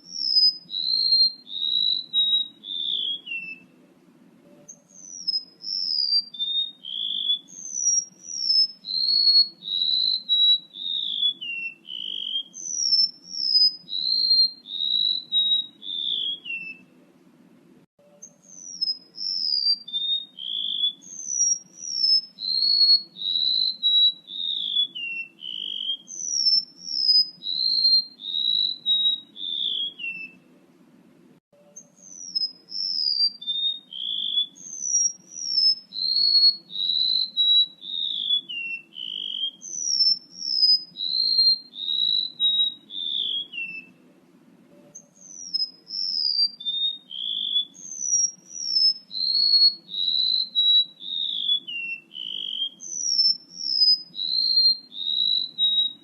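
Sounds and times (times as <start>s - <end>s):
whistled bird song: 0.0s - 3.8s, 4.4s - 17.0s, 18.0s - 30.6s, 31.6s - 56.0s
faint low hum: 1.5s - 6.0s, 14.6s - 19.4s, 28.2s - 32.9s.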